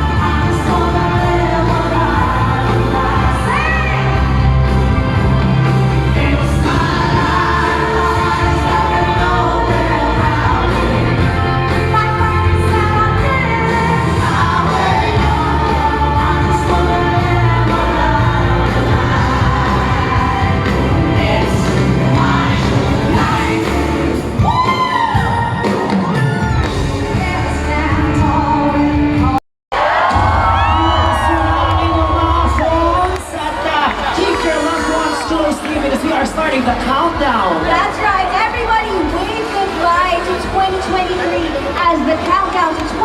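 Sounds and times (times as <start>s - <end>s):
heavy bass beat: 0.0s - 24.7s
pop music with singing: 0.0s - 43.0s.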